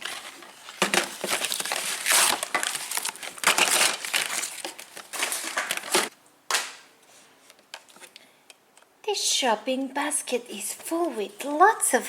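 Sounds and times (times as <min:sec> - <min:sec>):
plastic packaging crinkling: 0:00.0 - 0:06.1.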